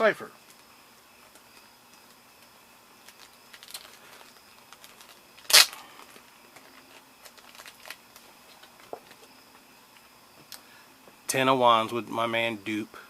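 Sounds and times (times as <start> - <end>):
light clicks and rustles: 3.0 - 10.6.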